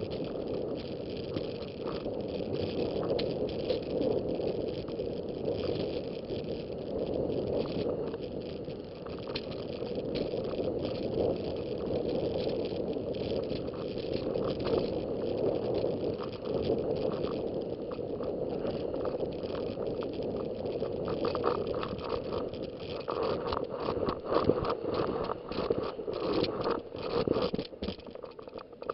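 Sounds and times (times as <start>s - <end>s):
wind on microphone: 0.0s - 28.9s
small knocks and rattles: 9.0s - 28.9s
snowboard sliding on snow: 10.0s - 27.4s.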